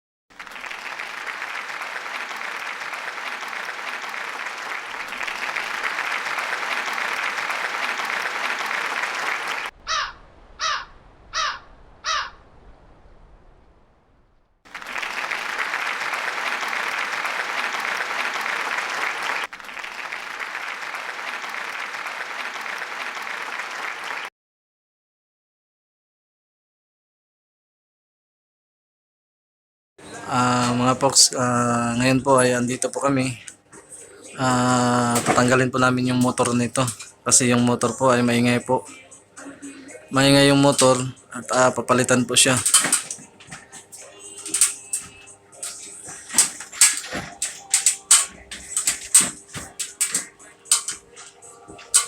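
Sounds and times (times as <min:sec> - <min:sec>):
bird cawing: 0:09.8 - 0:12.5
air conditioner blower whirring: 0:30.0 - 0:52.0.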